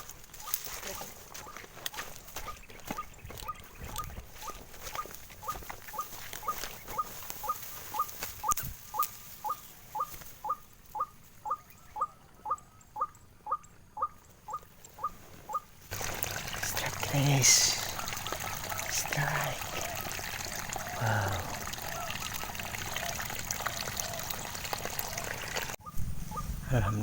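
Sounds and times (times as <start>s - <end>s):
waterhen calling: 2.4s - 27.0s.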